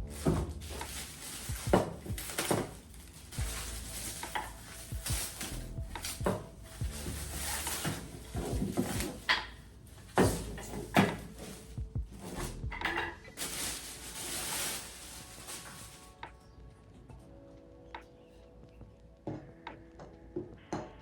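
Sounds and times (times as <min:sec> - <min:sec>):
dishes and utensils clattering: 0:00.0 - 0:14.8
faint background music: 0:00.0 - 0:21.0.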